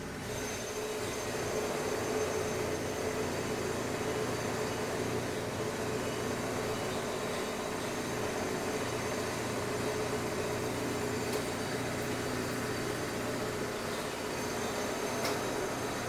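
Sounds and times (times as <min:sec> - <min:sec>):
construction machinery din: 0:00.0 - 0:16.0.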